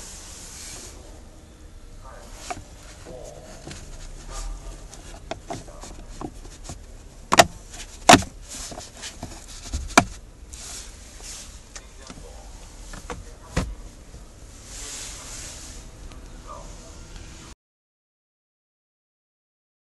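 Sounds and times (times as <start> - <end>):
plastic trim clicks and knocks: 7.3 - 8.3.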